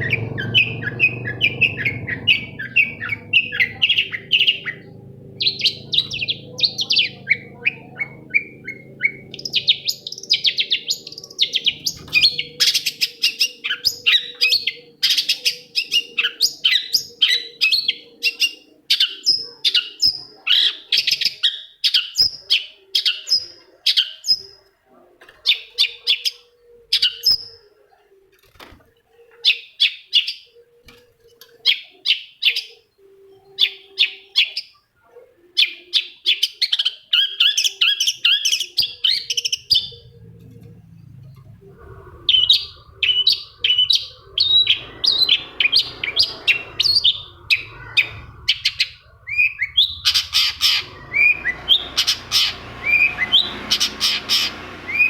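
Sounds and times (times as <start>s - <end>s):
bird chattering song: 0.0s - 24.6s, 35.6s - 55.0s.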